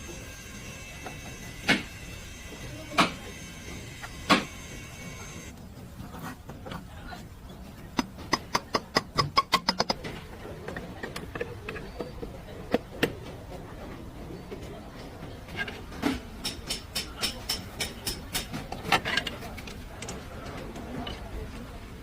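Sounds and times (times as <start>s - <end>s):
steady high hum: 0.0s - 5.6s
sharp clicks and knocks: 7.8s - 13.6s, 14.5s - 21.7s.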